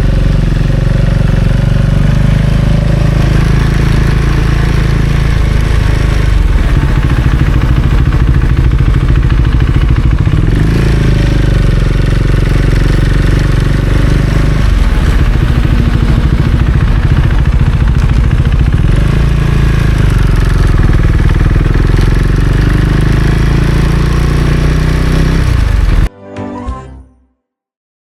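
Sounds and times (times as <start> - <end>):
motorcycle engine running: 0.0 - 26.1
music: 26.1 - 27.7.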